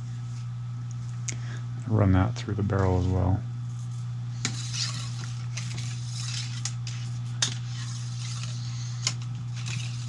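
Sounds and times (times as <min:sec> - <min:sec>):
steady low hum: 0:00.0 - 0:10.0
cleaning rod rubbing in barrel: 0:04.4 - 0:10.0.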